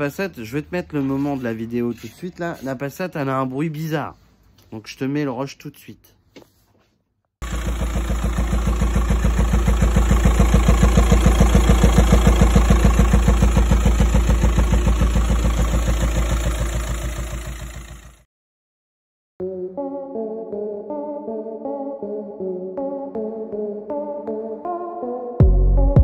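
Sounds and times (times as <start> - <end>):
diesel engine running: 7.4 - 18.2.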